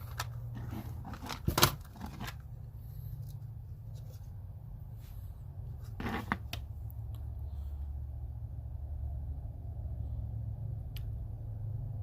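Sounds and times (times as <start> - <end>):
tool set clicking and rustling: 0.0 - 2.5
steady low hum: 0.0 - 12.0.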